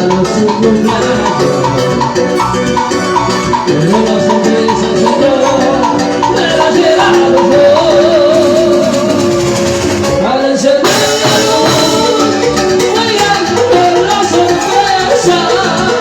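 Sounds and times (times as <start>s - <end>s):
latin dance music: 0.0s - 16.0s
shaker percussion: 10.9s - 16.0s.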